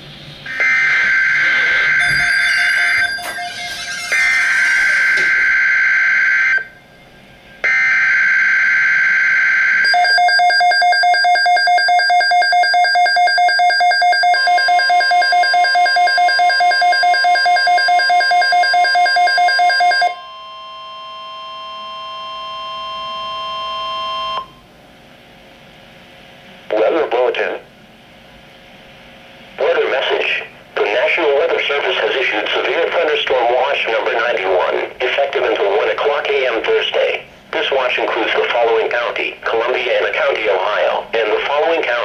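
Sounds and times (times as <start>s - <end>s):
buzzing data screech: 0.5s - 6.8s
steady alert tone: 0.5s - 7.6s
rapidly pulsing alarm beep: 0.5s - 24.6s.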